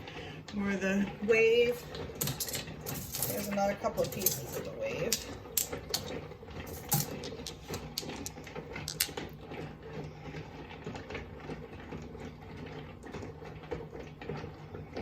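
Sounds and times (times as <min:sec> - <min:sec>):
stones clicking together: 0:06.9 - 0:09.2.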